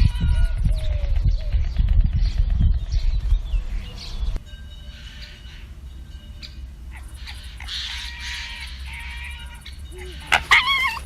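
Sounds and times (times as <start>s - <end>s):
low rumble: 0.0s - 4.4s
birds chirping and whistling: 0.0s - 11.0s.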